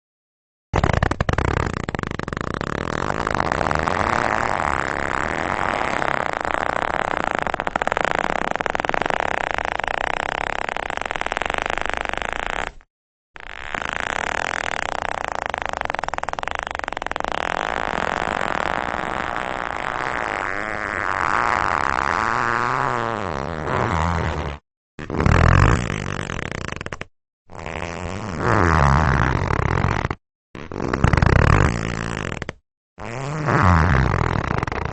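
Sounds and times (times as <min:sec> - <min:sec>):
leather chair creaking: 0:00.8 - 0:34.9.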